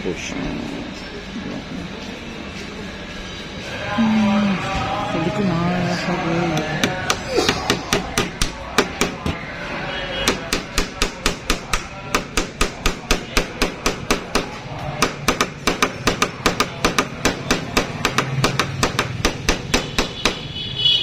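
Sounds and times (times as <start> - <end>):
hammer driving nail into wood: 10.3 - 20.4.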